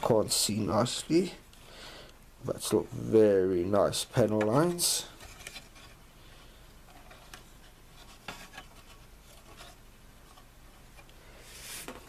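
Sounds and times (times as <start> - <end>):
plastic parts clicking and rubbing: 4.2 - 6.0, 6.8 - 11.1.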